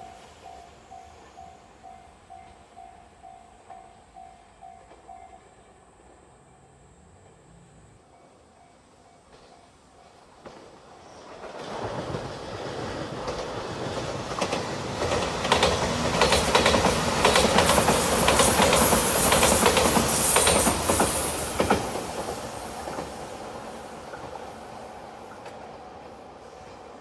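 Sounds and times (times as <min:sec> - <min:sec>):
train rumbling past: 0:00.0 - 0:27.0
wheels clicking over rail joints: 0:11.4 - 0:23.3.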